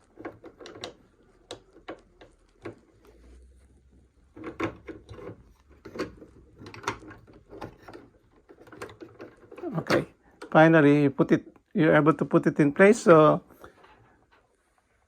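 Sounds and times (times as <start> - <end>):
sewing machine part clicks and knocks: 4.3 - 10.6.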